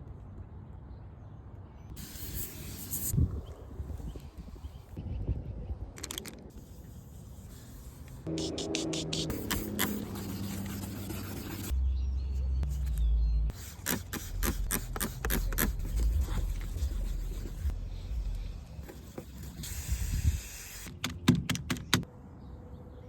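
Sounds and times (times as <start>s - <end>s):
steady spray hiss: 2.0s - 3.1s.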